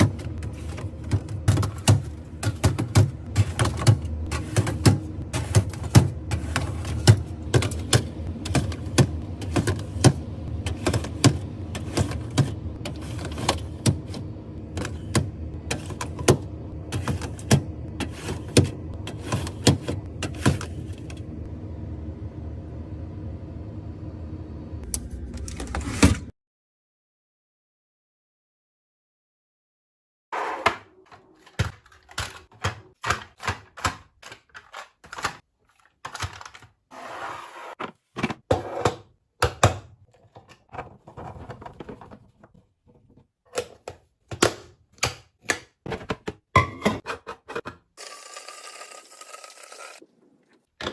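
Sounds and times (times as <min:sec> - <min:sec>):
containers clicking and knocking: 0:00.0 - 0:21.2, 0:31.0 - 0:36.7
steady low hum: 0:00.0 - 0:25.7.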